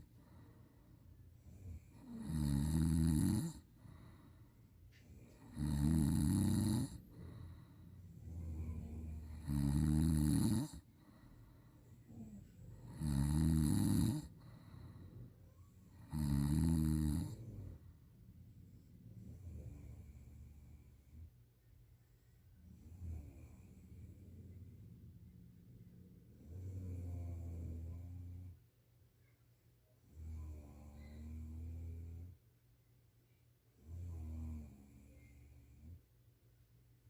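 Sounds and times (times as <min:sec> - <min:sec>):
quiet breathing: 0:00.0 - 0:37.0
person snoring loudly: 0:01.8 - 0:04.0, 0:05.4 - 0:07.5, 0:08.3 - 0:10.8, 0:12.8 - 0:14.8, 0:15.9 - 0:17.7.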